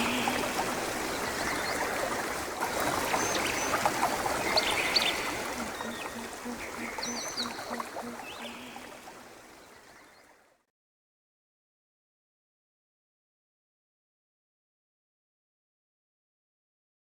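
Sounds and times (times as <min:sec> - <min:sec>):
running water: 0:00.0 - 0:10.5.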